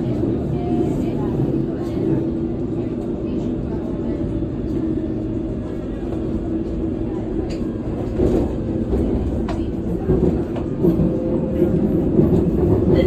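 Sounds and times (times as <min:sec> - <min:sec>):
underground train rumbling: 0:00.0 - 0:13.0.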